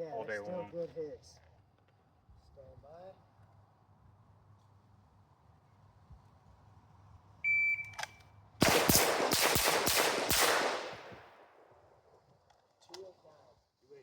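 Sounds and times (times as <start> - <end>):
pistol shots: 8.6 - 11.6.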